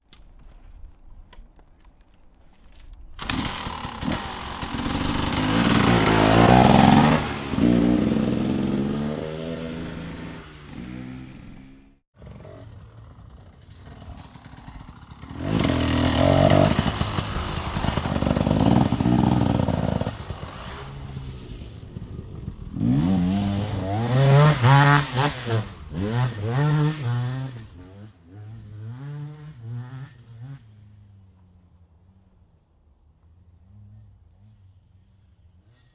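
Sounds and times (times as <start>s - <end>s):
dirt bike engine revving: 3.2s - 31.1s.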